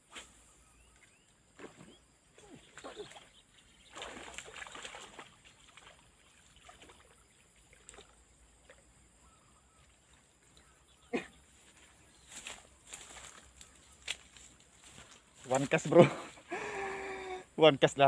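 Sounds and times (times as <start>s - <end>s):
water splashing: 1.6s - 8.9s.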